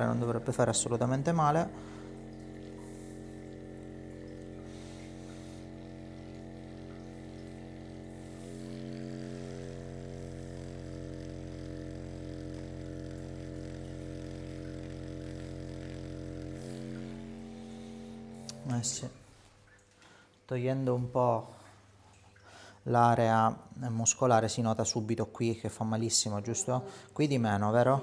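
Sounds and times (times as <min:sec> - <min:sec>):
vibration massager humming: 0:00.0 - 0:19.8.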